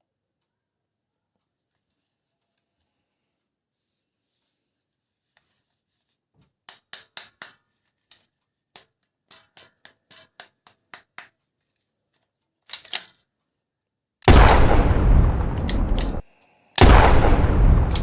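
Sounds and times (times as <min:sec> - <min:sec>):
plastic toy parts clicking: 0:06.6 - 0:11.5, 0:12.2 - 0:13.4.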